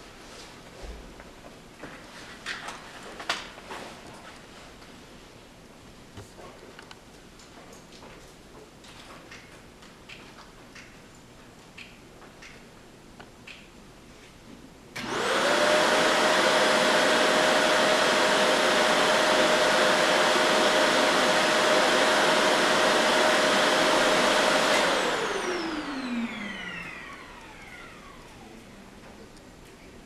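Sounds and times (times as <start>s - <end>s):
appliance motor whining: 15.0s - 29.2s.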